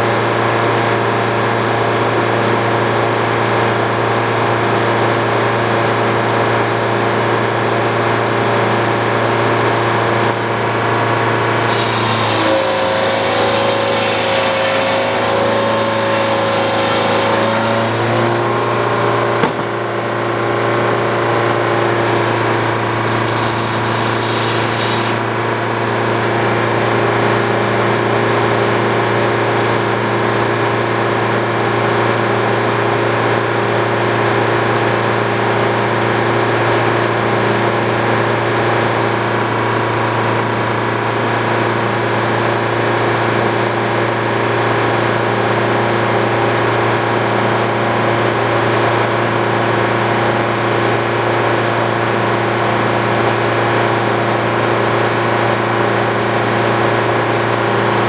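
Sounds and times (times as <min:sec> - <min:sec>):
sawmill machine drone: 0:08.4 - 0:27.9.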